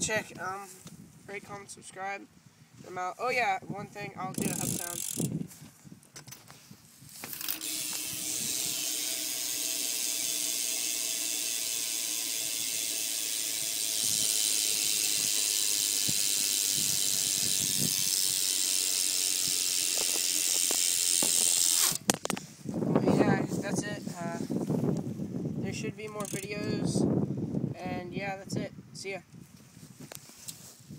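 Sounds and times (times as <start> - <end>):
bike hub freewheel clicking: 4.3 - 5.4, 7.2 - 22.4, 26.1 - 26.6.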